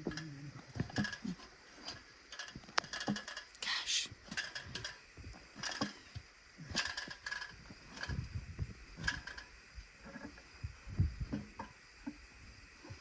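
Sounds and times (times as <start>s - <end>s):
irregular clicking and clattering: 0.0s - 12.2s
dull low thumps: 7.6s - 9.8s, 10.5s - 11.6s.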